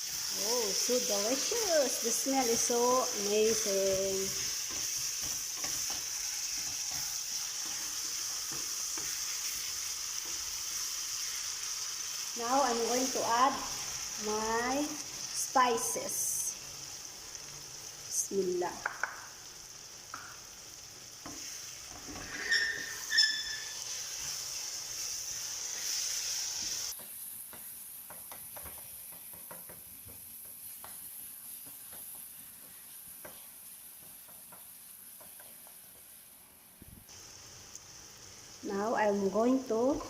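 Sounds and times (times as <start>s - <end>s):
vegetables sizzling in oil: 0.0s - 40.0s
spoon stirring and scraping: 3.9s - 10.4s, 21.2s - 24.4s.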